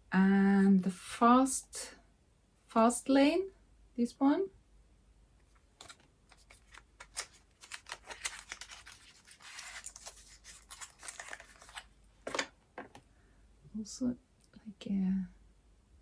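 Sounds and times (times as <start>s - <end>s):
packaging clicks and rustling: 5.8s - 13.0s.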